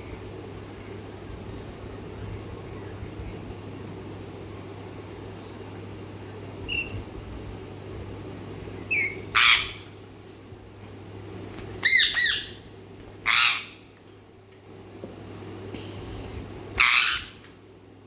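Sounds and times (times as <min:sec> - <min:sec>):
steady low hum: 0:00.0 - 0:18.0
parrot squawking: 0:06.7 - 0:07.0, 0:08.9 - 0:09.9, 0:11.8 - 0:12.6, 0:13.2 - 0:13.9, 0:16.8 - 0:17.4.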